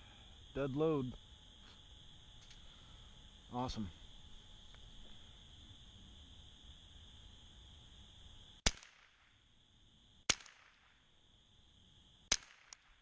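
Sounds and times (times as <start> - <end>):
high insect drone: 0.0 - 13.0
rifle shots: 8.6 - 9.4, 10.3 - 11.0, 12.3 - 13.0.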